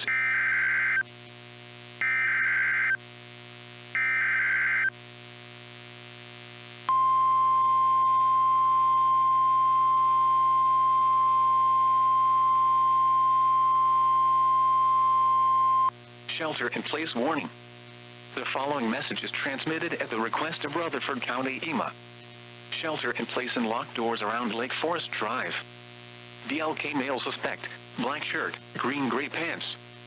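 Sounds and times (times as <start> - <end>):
warning alarm tone: 0.0 - 1.0, 2.0 - 3.0, 4.0 - 4.9, 6.9 - 15.9
buzzing data bursts: 2.0 - 3.0, 3.9 - 4.9, 6.9 - 15.9.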